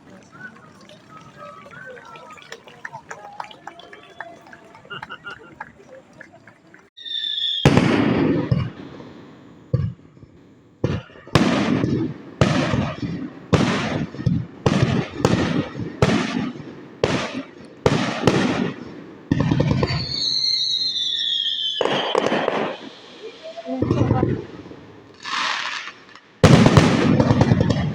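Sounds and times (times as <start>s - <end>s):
fireworks bangs: 0.0s - 27.9s
falling high whistle: 7.0s - 7.8s, 19.9s - 22.2s.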